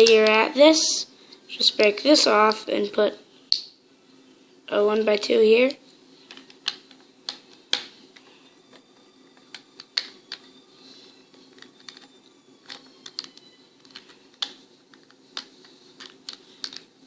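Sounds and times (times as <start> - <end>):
faint steady hum: 0.0 - 17.0
plastic bricks clicking: 11.6 - 16.9.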